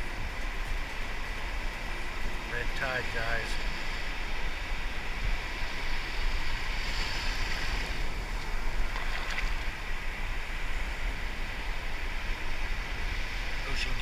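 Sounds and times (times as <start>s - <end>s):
wind rumbling on microphone: 0.0s - 14.0s
surf breaking in shallows: 5.6s - 12.0s.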